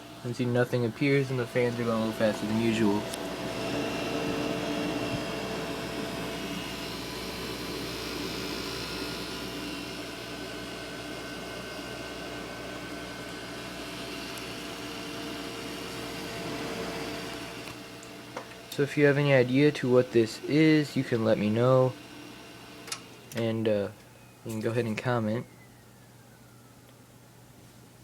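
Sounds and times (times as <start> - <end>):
computer fans whooshing: 0.1 - 8.3.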